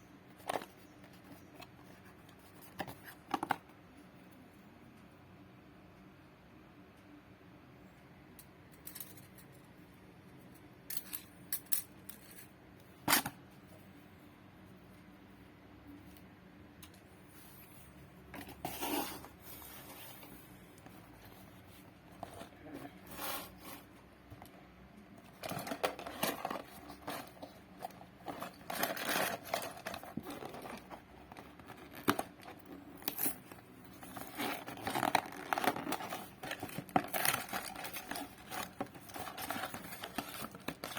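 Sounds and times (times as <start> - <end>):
packaging scraping: 18.4 - 20.3, 25.3 - 40.9
packaging rustling and tearing: 25.3 - 40.9.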